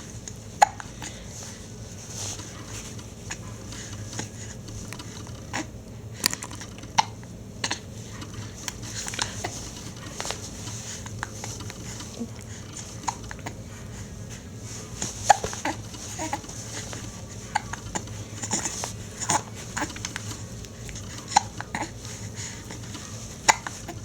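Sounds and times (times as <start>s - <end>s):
baby hiccupping: 0.5s - 1.2s, 15.0s - 24.0s.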